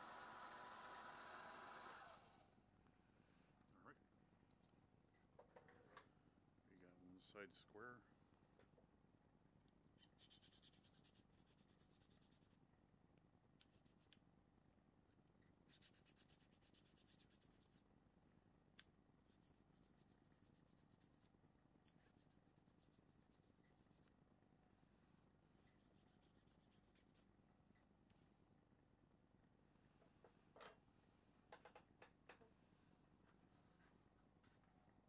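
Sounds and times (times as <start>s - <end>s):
hand scratching on small workpiece: 10.0s - 12.6s, 13.6s - 14.2s, 15.7s - 17.8s, 19.3s - 21.3s, 21.9s - 24.1s.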